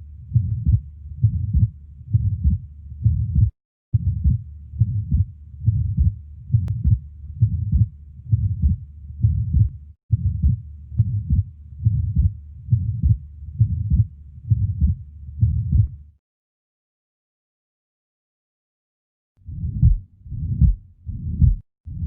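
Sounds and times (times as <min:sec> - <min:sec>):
heartbeat through stethoscope: 0:00.0 - 0:16.0, 0:19.5 - 0:22.0
heart murmur: 0:00.3 - 0:16.0, 0:19.5 - 0:22.0.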